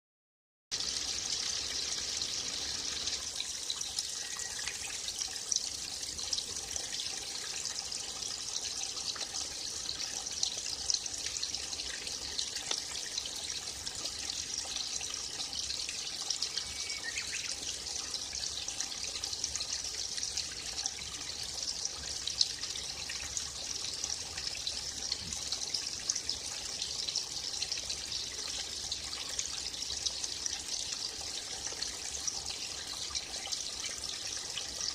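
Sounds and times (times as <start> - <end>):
stream trickling: 0.7 - 34.9
faint small bird chirps: 3.8 - 5.1, 16.3 - 17.8.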